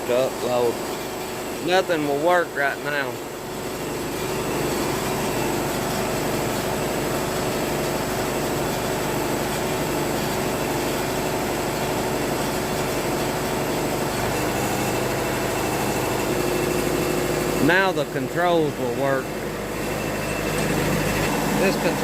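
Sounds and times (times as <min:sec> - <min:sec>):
sawmill power unit running: 0:00.0 - 0:22.0.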